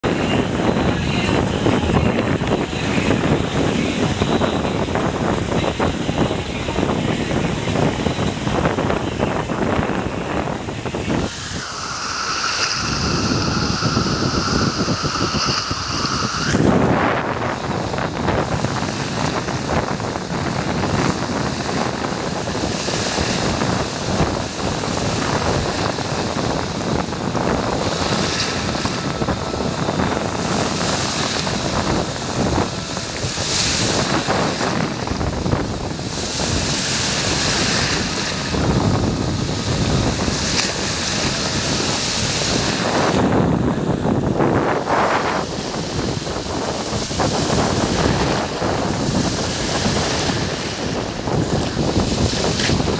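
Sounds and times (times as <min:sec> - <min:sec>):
waves washing onto beach: 0:00.0 - 0:52.9
wind buffeting microphone: 0:00.0 - 0:52.9.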